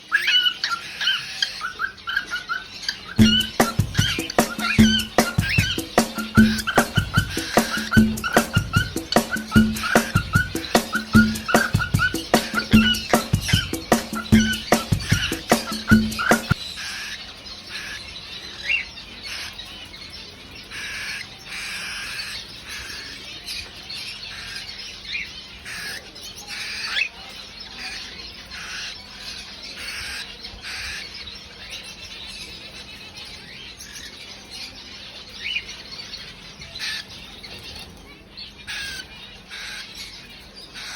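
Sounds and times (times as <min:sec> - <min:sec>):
cockatiel chirping and squawking: 0:00.0 - 0:31.3, 0:35.5 - 0:37.9, 0:38.6 - 0:40.9.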